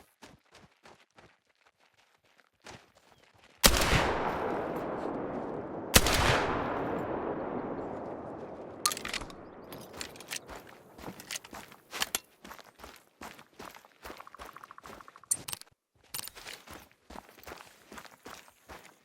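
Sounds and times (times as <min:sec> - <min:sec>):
gunshots with echo: 0:03.6 - 0:11.0.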